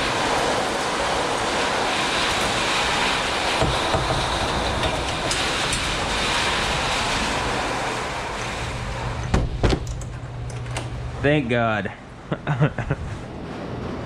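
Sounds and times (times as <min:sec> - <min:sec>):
strong wind rushing: 0:00.0 - 0:09.3.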